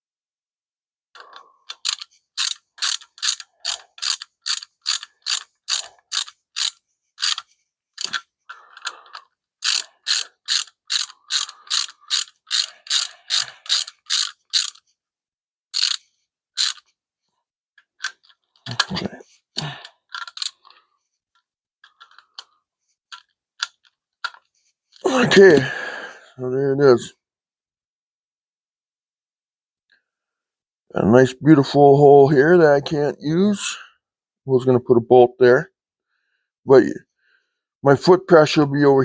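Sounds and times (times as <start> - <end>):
ratchet wrench clicking: 1.7 - 8.2, 9.6 - 14.8, 15.8 - 16.0, 16.6 - 16.8, 20.1 - 20.6.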